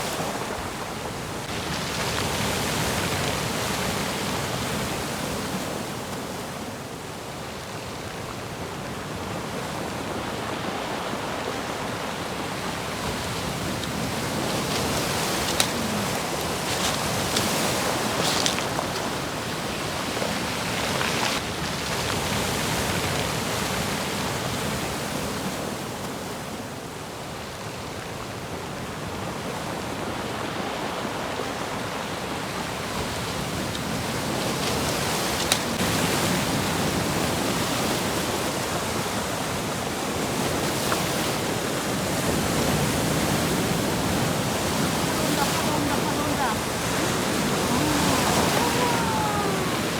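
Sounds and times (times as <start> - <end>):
waves breaking: 0.0 - 26.6, 27.6 - 49.9
water crashing: 10.6 - 24.6, 32.0 - 49.9.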